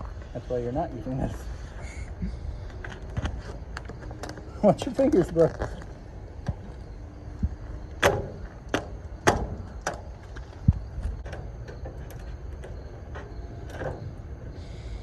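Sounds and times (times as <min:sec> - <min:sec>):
sharp handling clicks and knocks: 0:07.9 - 0:14.1.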